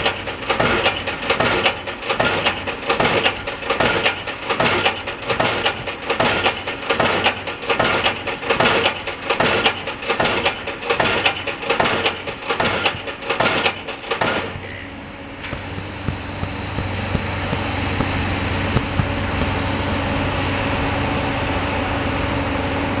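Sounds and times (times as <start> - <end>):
pile driver hammer blows: 0.0 - 20.9
machinery engine hum: 0.0 - 23.0.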